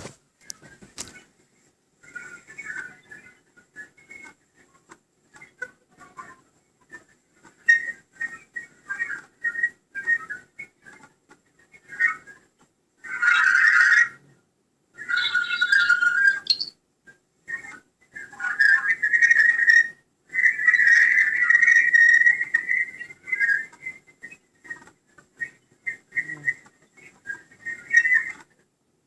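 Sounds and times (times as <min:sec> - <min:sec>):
high whistling: 0:06.9 - 0:11.0.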